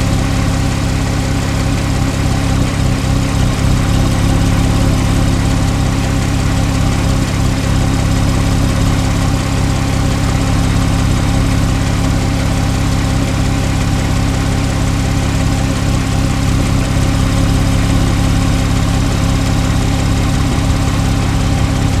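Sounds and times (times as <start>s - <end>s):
car engine idling: 0.0s - 22.0s.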